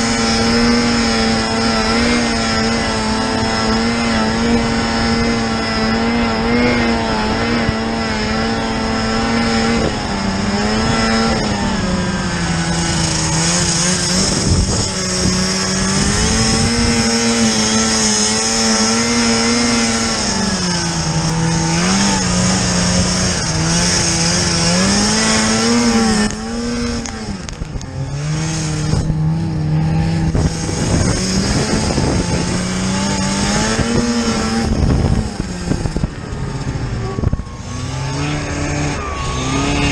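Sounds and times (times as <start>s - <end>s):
snowmobile engine revving: 0.0s - 39.9s.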